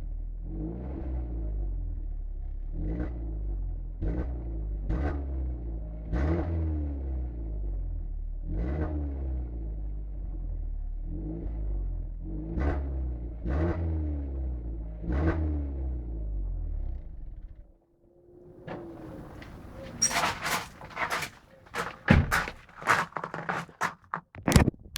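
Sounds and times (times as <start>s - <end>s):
car engine idling and revving: 0.0s - 17.6s.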